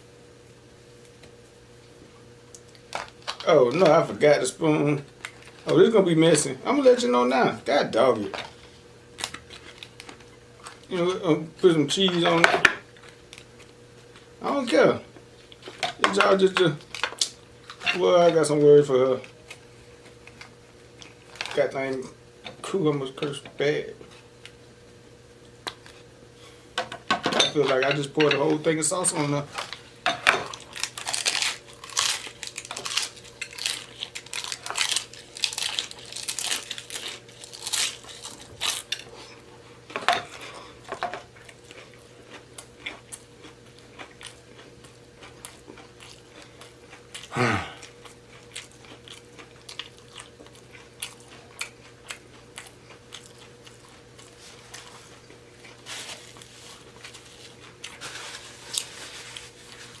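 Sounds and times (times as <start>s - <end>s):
faint steady hum: 0.0s - 60.0s
crunching taco shell: 2.6s - 3.9s, 5.0s - 5.9s, 8.2s - 11.0s, 30.4s - 39.3s, 40.0s - 60.0s
wet chewing: 40.3s - 58.0s.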